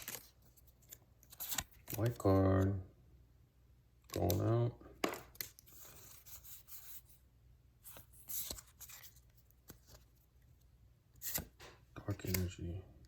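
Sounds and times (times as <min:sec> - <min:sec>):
trading cards sliding and rubbing: 0:05.4 - 0:07.2, 0:07.8 - 0:10.2, 0:11.2 - 0:12.5.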